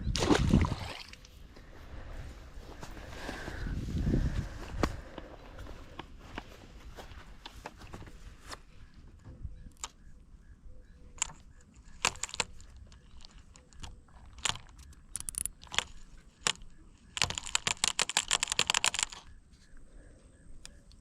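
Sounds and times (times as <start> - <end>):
fishing reel clicks and taps: 12.0 - 19.3
fishing reel rapid clicking: 14.3 - 16.6.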